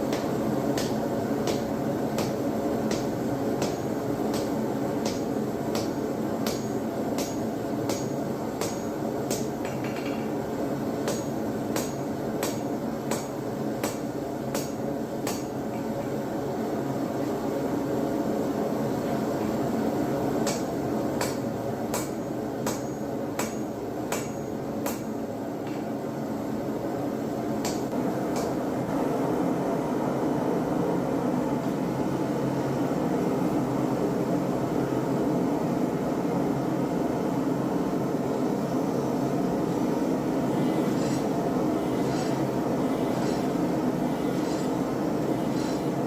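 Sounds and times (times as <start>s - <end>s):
hammer striking steel: 20.4s - 25.1s.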